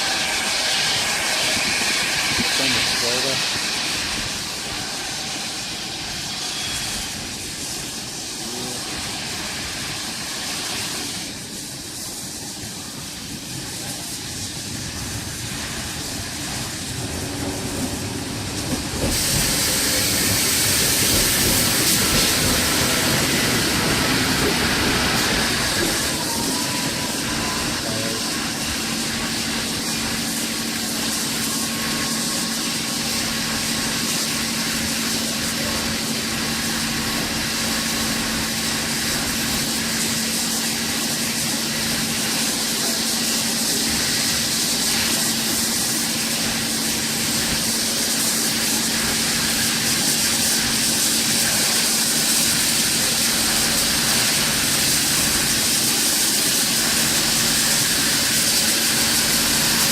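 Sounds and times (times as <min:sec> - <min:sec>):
locomotive hiss: 0:00.0 - 0:59.9
locomotive low hum: 0:13.8 - 0:39.6.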